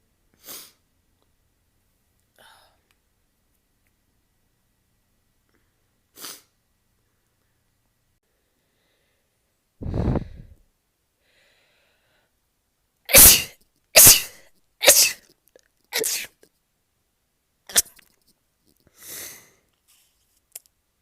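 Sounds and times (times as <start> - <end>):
woman sneezing: 13.1 - 15.3, 15.9 - 16.4.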